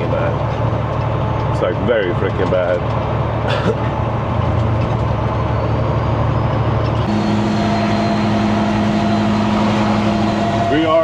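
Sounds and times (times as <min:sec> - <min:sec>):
truck diesel engine drone: 0:00.0 - 0:11.0
faint high whistle: 0:07.1 - 0:11.0.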